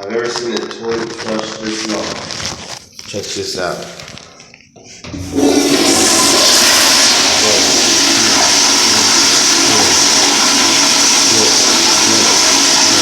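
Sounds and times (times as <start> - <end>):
toilet flushing: 5.1 - 13.0.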